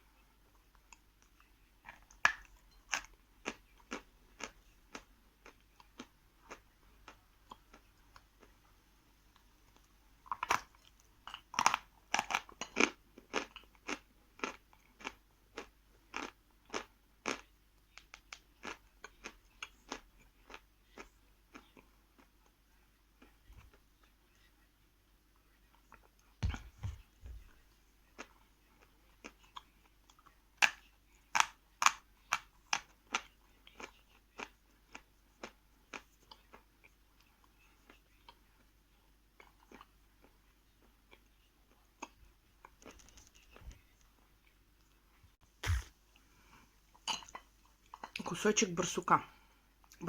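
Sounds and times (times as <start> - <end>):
crunching chalk: 45.6 - 45.9.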